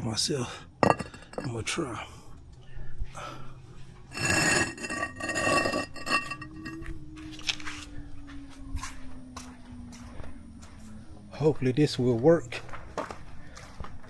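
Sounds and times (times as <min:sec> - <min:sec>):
bricks clattering together: 0:00.8 - 0:01.5, 0:04.2 - 0:06.8.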